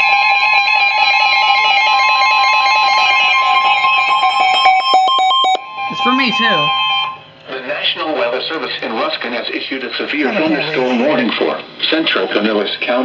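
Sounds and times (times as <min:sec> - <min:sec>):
two-pitch alarm tone: 0:05.1 - 0:07.4.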